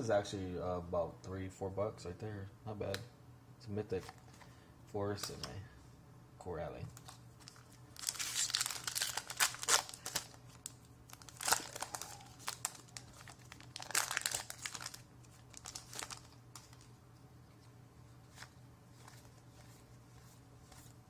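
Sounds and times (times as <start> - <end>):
foil wrapper crinkling and tearing: 7.0 - 16.9.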